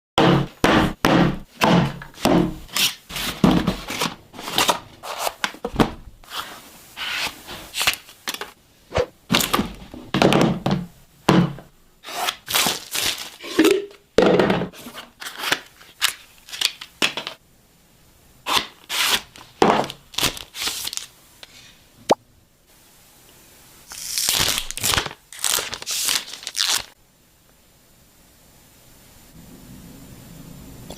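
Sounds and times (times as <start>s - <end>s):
packaging knocks and scrapes: 0.2s - 17.4s.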